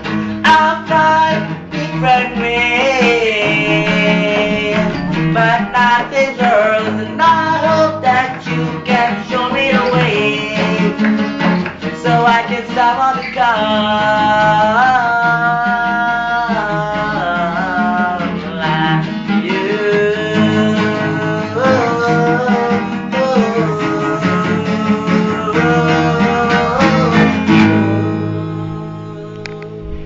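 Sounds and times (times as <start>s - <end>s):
plucked guitar: 0.0s - 30.0s
sliding melody notes: 0.0s - 30.0s.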